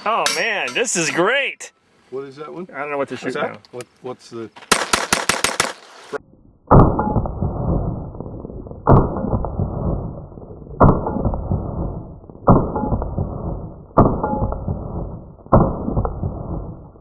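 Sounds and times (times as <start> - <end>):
muffled pistol shots: 4.7 - 5.9.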